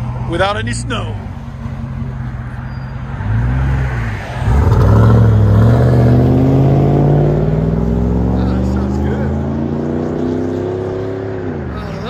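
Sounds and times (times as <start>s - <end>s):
truck engine revving and accelerating: 3.1s - 12.0s.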